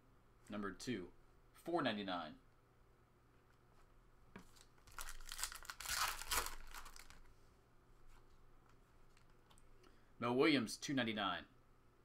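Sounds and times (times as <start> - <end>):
wrapper tearing and crinkling: 4.8 - 7.3.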